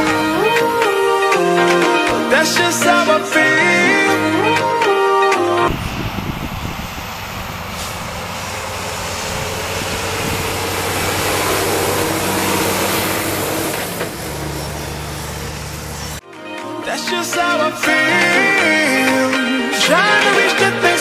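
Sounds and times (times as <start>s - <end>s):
broad rushing noise: 0.0s - 16.2s
engine humming: 0.0s - 16.2s.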